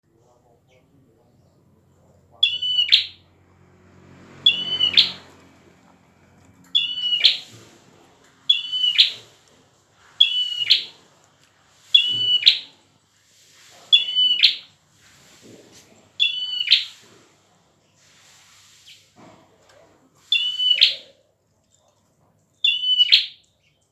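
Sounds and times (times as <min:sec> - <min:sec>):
bird singing sharp high calls: 0:02.4 - 0:03.2, 0:04.4 - 0:05.3, 0:06.7 - 0:07.7, 0:08.5 - 0:09.3, 0:10.2 - 0:11.0, 0:11.9 - 0:12.8, 0:13.9 - 0:14.7, 0:16.2 - 0:17.0, 0:20.3 - 0:21.1, 0:22.6 - 0:23.7.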